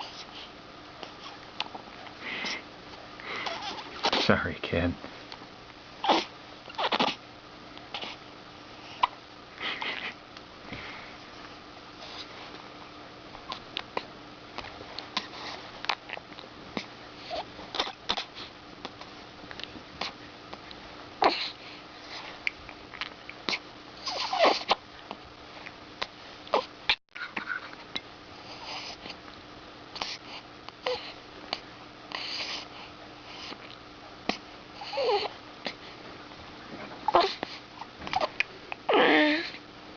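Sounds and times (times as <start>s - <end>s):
baby hiccupping: 6.0s - 7.2s, 17.7s - 18.3s, 38.1s - 39.5s.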